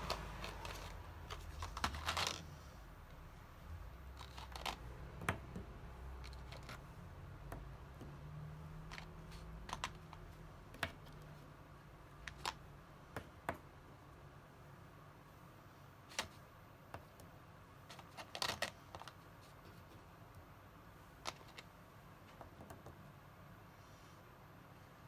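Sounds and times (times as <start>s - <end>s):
faint room hiss: 0.0s - 25.0s.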